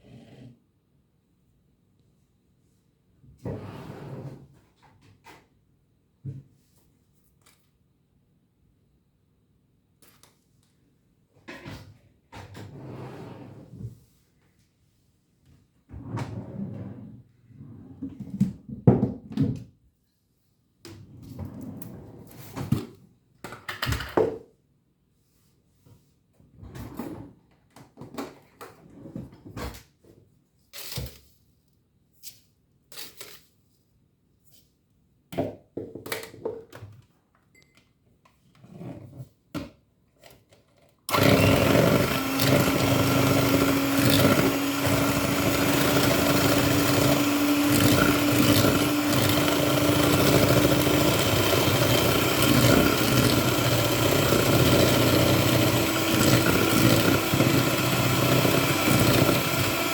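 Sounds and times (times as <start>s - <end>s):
electric mixer whipping: 41.1s - 59.9s.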